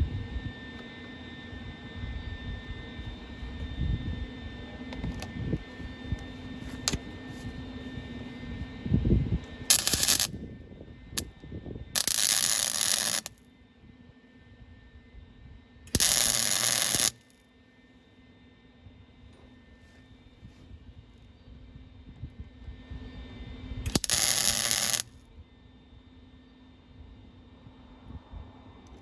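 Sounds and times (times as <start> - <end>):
welder arc crackling and hissing: 9.7 - 10.3, 12.0 - 13.4, 15.9 - 17.3, 23.9 - 25.1.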